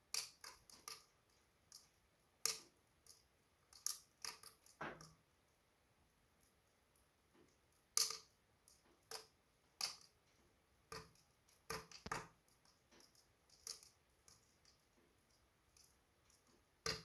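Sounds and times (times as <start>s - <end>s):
wood fire crackling and popping: 11.7s - 12.3s.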